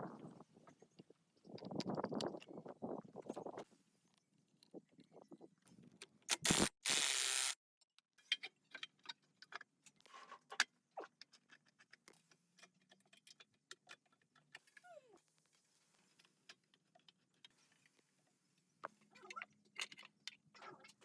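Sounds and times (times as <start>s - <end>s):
loud hissing bursts: 6.3s - 7.6s.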